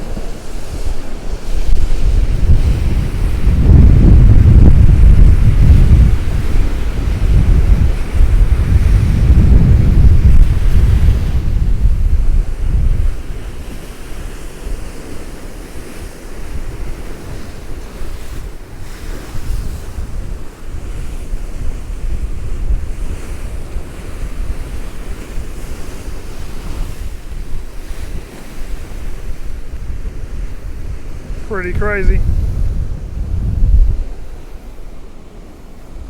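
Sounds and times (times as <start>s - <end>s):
heavy surf breaking: 0.0s - 14.8s, 17.8s - 36.0s.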